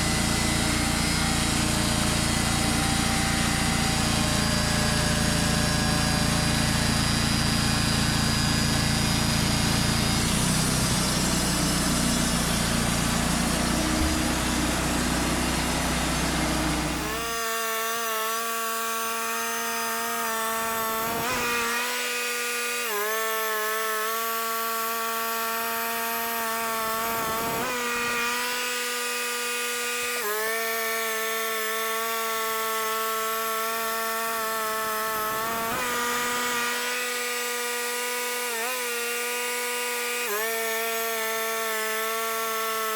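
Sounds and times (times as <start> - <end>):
sawmill rumbling: 0.0 - 22.7, 32.7 - 42.9.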